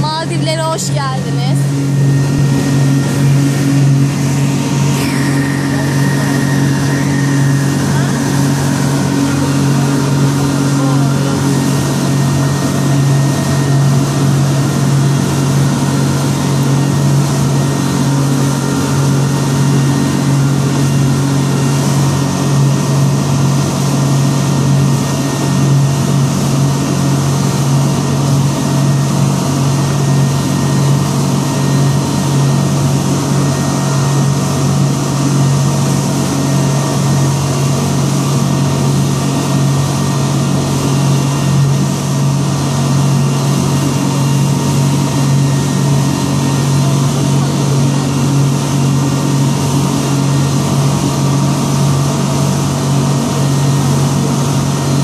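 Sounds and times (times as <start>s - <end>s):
boat engine droning: 0.0s - 55.0s.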